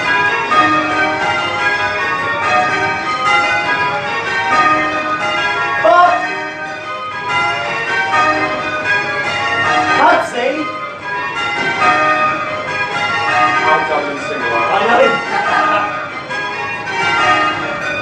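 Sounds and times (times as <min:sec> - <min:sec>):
church bells ringing in changes: 0:00.0 - 0:18.0
person calling out: 0:05.8 - 0:06.2.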